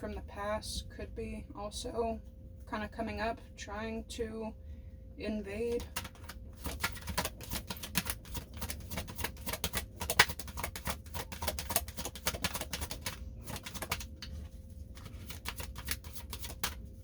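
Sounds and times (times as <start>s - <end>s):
cards being shuffled by hand: 5.7s - 17.0s.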